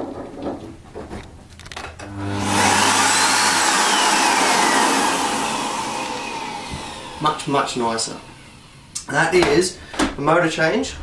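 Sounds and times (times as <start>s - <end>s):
vacuum cleaner running: 2.0s - 9.0s.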